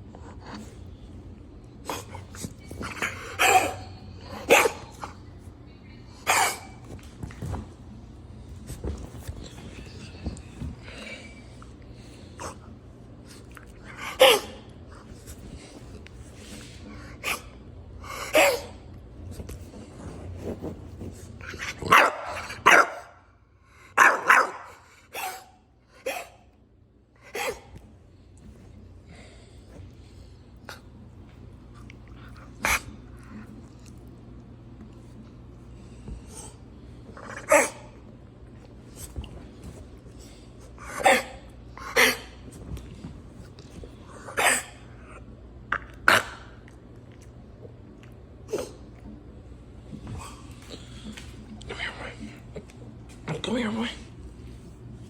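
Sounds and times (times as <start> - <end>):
dog coughing: 2.8 - 4.9, 6.2 - 6.8, 18.1 - 18.8.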